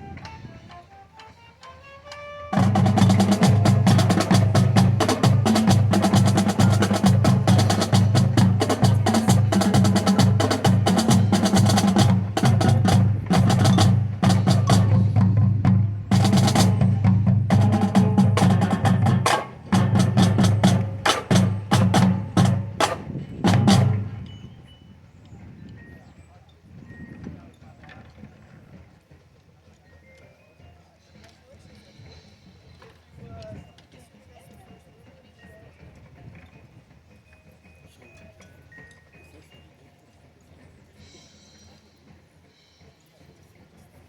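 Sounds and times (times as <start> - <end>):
marching drumline playing cadence: 2.2 - 24.4.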